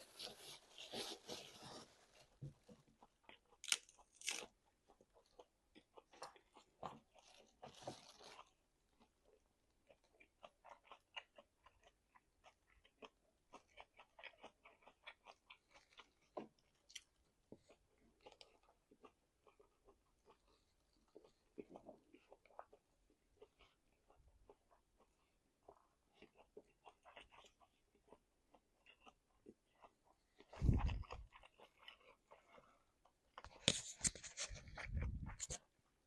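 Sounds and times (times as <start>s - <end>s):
chewing and biting meat: 3.0s - 35.6s.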